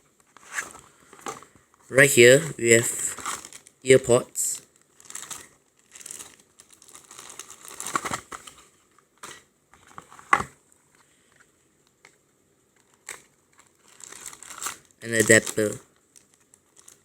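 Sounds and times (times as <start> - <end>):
plastic packaging crinkling: 3.0 - 10.4, 12.8 - 17.0.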